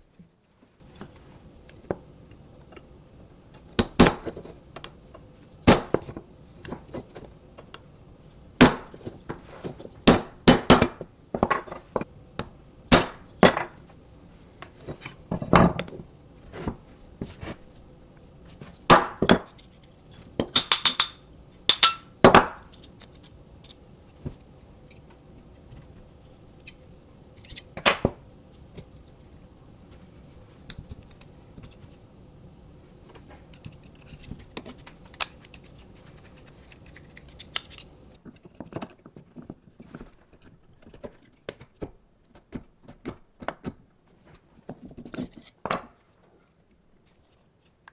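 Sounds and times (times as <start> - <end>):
metal tools clinking on workbench: 20.4 - 22.1.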